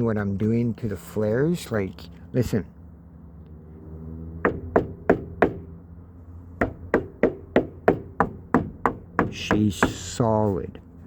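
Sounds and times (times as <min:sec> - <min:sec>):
knocking on plastic fender: 0:04.4 - 0:05.6, 0:06.6 - 0:10.0.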